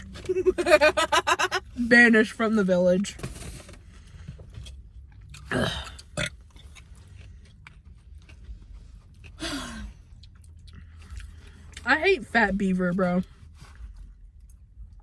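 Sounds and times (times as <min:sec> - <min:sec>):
chewing food: 0:04.6 - 0:11.9
person burping: 0:05.5 - 0:06.4.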